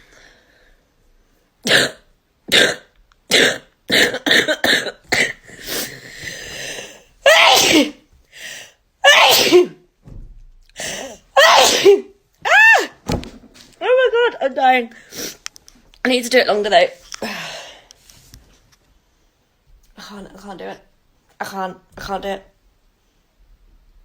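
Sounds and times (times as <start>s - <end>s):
person coughing: 1.7s - 5.9s, 7.3s - 8.0s
person sneezing: 1.7s - 8.0s, 9.0s - 9.8s, 10.8s - 13.0s.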